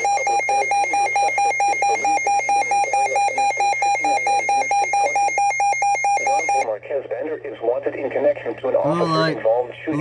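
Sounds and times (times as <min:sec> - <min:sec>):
rapid pulsing electronic beep: 0:00.0 - 0:06.7.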